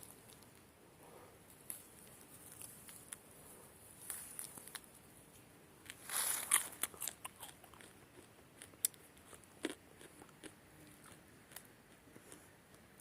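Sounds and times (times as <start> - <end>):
rustling crunch: 0.0 - 12.5
crisp crunches: 5.9 - 11.6.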